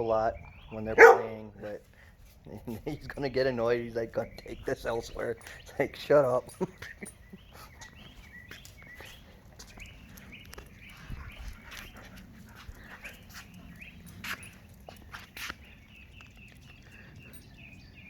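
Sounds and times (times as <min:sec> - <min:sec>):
dogs chewing bones: 0:07.8 - 0:17.7.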